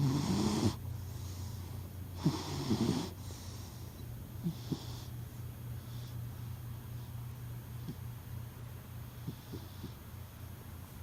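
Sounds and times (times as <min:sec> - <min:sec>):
cat snoring: 0:00.0 - 0:00.8, 0:02.2 - 0:03.6, 0:04.4 - 0:05.1.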